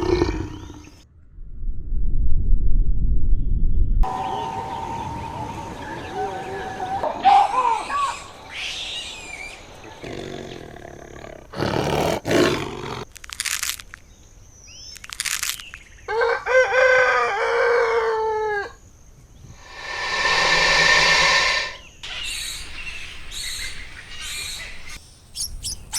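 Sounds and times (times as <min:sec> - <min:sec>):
rooster crowing: 0:16.1 - 0:18.8.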